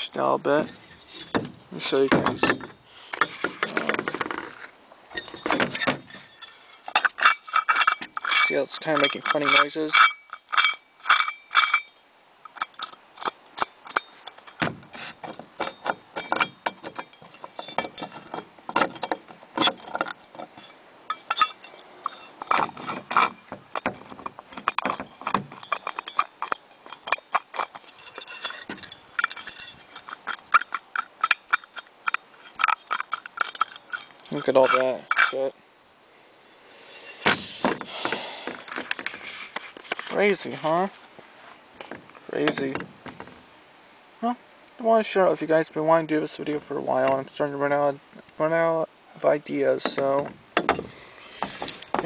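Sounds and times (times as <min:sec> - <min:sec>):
water pump metallic rattling: 0:00.0 - 0:04.4, 0:05.1 - 0:35.5.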